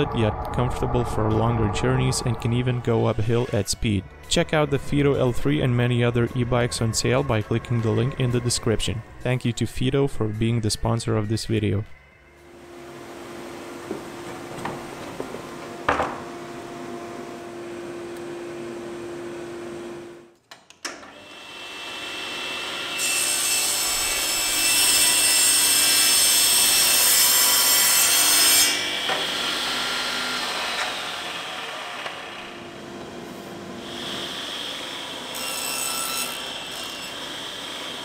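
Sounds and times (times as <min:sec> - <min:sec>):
power saw cutting wood: 0:21.2 - 0:38.0.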